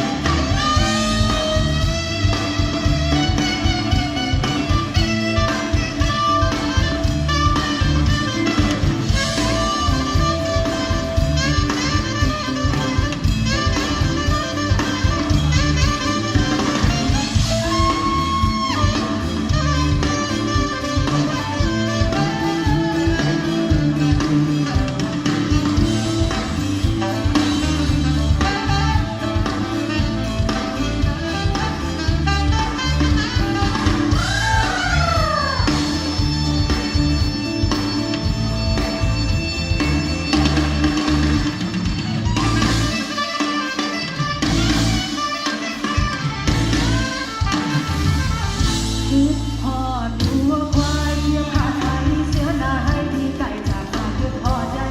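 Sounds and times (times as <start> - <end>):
jazzy band music: 0.0 - 54.9
sliding melodic lead line: 0.0 - 54.9.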